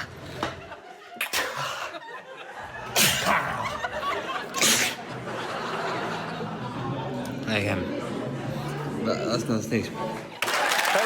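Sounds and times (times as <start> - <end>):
laughter: 0.2 - 7.5
man sneezing loudly: 3.0 - 3.7, 4.5 - 5.0.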